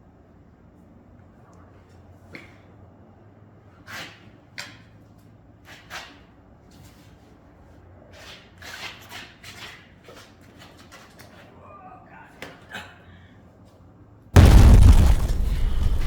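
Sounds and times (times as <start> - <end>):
steady low hum: 14.4 - 16.0.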